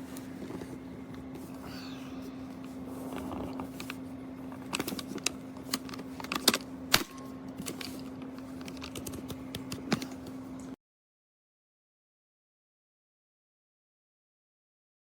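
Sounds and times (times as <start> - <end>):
steady low hum: 0.0 - 10.8.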